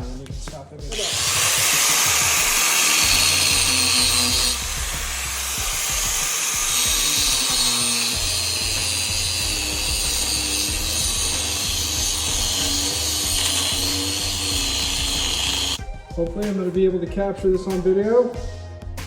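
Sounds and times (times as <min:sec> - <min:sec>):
angle grinder grinding steel: 0:00.9 - 0:15.8.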